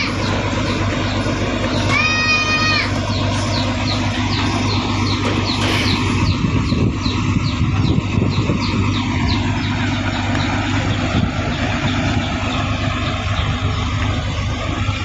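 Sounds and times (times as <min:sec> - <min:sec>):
engine idling: 0:00.0 - 0:15.0.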